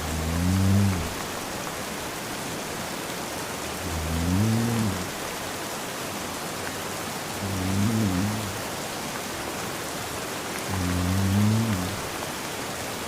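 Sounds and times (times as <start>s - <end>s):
man snoring: 0.0s - 1.3s, 3.8s - 5.4s, 7.4s - 8.6s, 10.7s - 12.1s
steady rain hiss: 0.0s - 13.0s.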